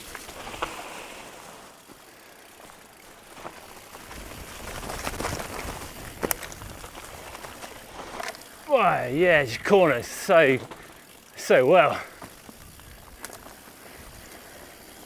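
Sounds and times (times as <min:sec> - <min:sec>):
bike clicks and rattles: 0:00.0 - 0:15.0
tyre and wind noise: 0:03.3 - 0:15.0.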